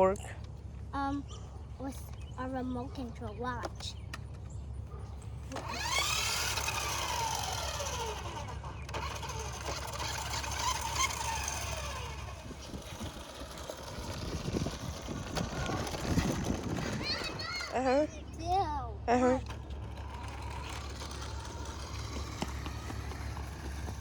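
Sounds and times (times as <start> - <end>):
toy truck electric motor whining: 5.4 - 24.0.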